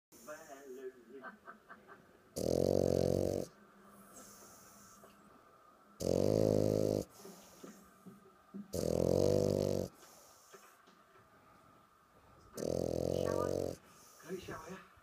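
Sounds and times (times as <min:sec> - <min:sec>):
dog snoring loudly: 0:02.4 - 0:03.6, 0:06.0 - 0:07.6, 0:08.7 - 0:10.5, 0:12.6 - 0:14.2.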